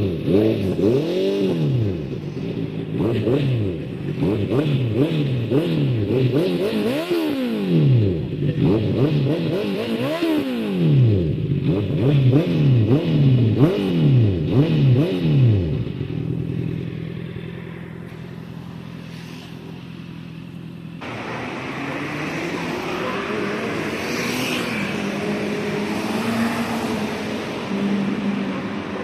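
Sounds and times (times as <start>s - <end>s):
motorcycle engine idling: 15.9s - 21.2s.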